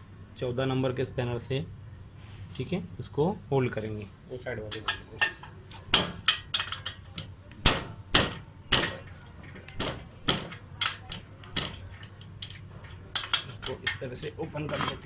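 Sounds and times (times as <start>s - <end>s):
spanners clinking on metal: 4.6s - 7.3s, 8.8s - 15.0s.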